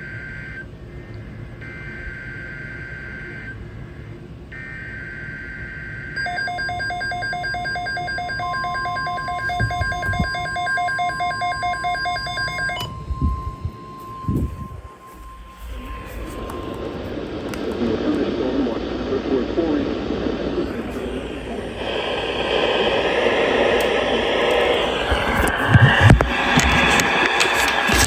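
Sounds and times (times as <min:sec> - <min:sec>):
steady single alarm tone: 0:00.0 - 0:17.6
pulsing electronic alarm tone: 0:04.6 - 0:17.6
screeching digital data bursts: 0:06.2 - 0:17.3.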